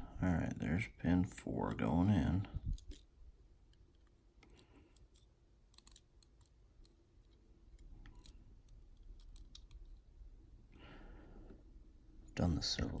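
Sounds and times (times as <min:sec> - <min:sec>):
small clicks of lock parts: 0:02.6 - 0:03.1, 0:03.7 - 0:10.1.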